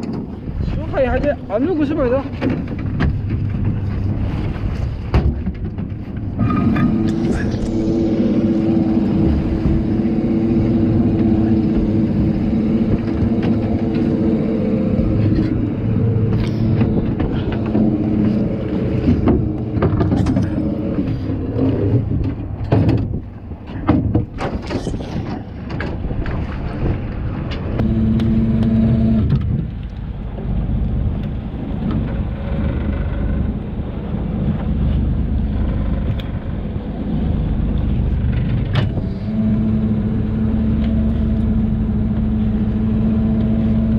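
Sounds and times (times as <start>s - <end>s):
knocks and clatter: 2.3s - 8.0s, 16.3s - 20.9s, 22.0s - 27.9s
short steady hum: 6.2s - 22.2s, 27.8s - 29.4s, 38.9s - 43.9s
motor engine running: 6.4s - 21.3s, 27.8s - 29.5s, 38.9s - 43.9s.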